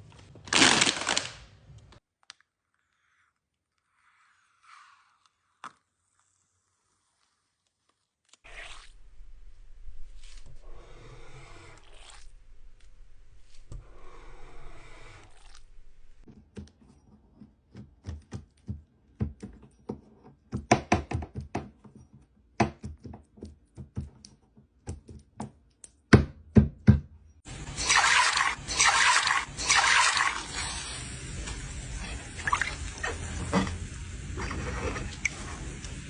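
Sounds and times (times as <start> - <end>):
scraping or tearing: 0.5 - 1.4.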